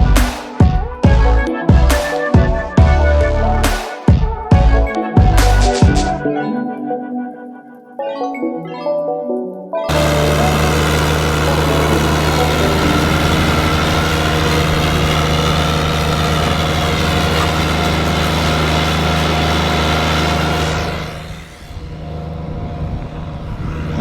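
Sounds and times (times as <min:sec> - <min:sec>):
snow-clearing machine engine running: 0:09.9 - 0:24.0.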